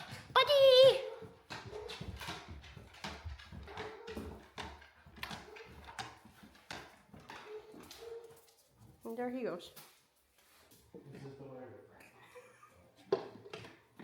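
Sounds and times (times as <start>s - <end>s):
dog claws clicking on floor: 1.1s - 11.3s, 13.0s - 14.0s.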